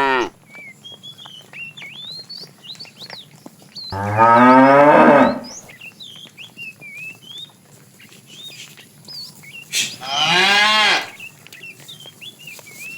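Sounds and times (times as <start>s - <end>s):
cow mooing: 0.0s - 0.3s, 4.0s - 5.6s, 10.0s - 11.2s.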